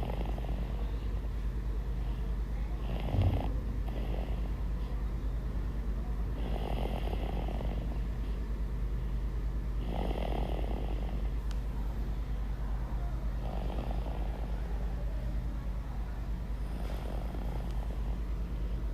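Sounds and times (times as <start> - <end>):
steady low hum: 0.0 - 18.9
rasping snores: 9.8 - 11.1.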